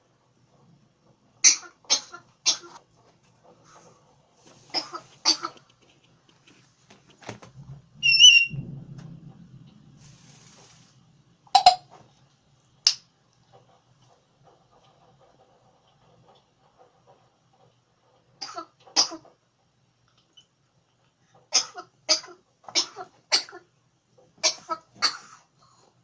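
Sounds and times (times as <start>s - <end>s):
low rumble: 7.5s - 11.5s
short clear whistle: 8.0s - 8.6s
parrot imitating a cough: 21.5s - 23.7s, 24.4s - 25.5s.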